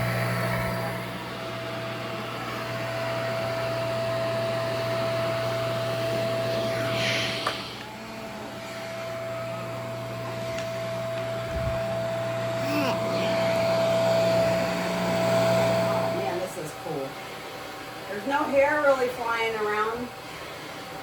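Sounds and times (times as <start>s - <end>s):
vacuum whining: 0.0s - 21.0s.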